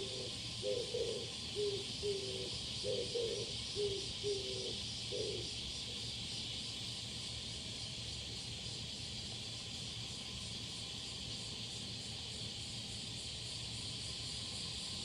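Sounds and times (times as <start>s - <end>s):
dove cooing: 0.0s - 5.6s
high insect drone: 0.0s - 15.0s.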